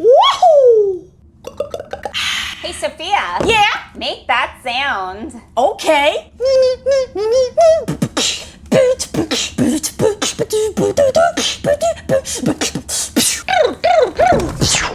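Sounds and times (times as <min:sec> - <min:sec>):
girl beatboxing: 0:06.4 - 0:14.9.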